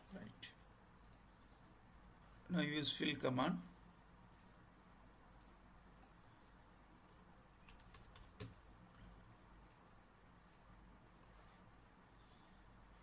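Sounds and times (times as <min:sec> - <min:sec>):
computer mouse clicks: 0:01.0 - 0:01.3, 0:04.3 - 0:04.6, 0:05.3 - 0:06.2, 0:07.6 - 0:08.6, 0:09.5 - 0:11.4.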